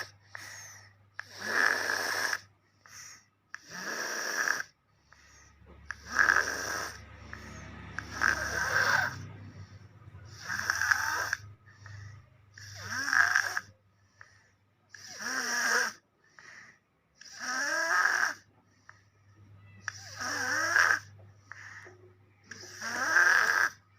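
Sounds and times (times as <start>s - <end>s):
baby snoring: 0.0s - 19.2s, 19.8s - 23.9s.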